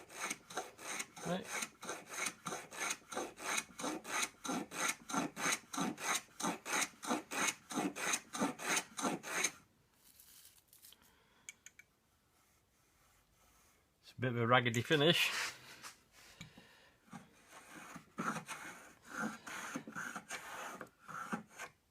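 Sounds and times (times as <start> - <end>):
block plane rasping on wood: 0.0 - 9.6, 17.2 - 21.8.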